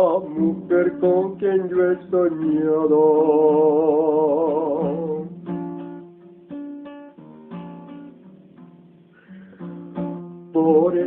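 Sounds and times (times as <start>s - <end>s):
man singing with vibrato: 0.0s - 5.9s, 10.2s - 11.0s
acoustic guitar plucking: 0.0s - 11.0s.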